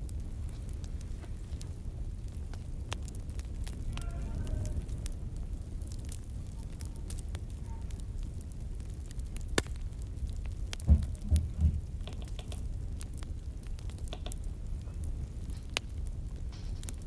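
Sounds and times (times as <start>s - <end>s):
fire crackling and popping: 0.0s - 17.0s
dull low thumps: 10.8s - 12.0s.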